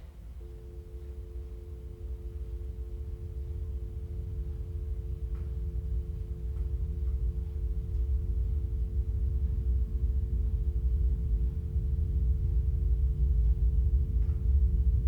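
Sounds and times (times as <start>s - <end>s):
low rumbling drone: 0.0s - 15.0s.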